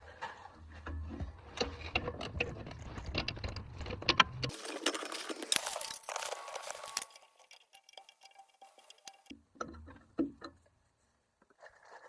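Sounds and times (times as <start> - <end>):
hand tools clicking metallically: 4.5 - 9.3.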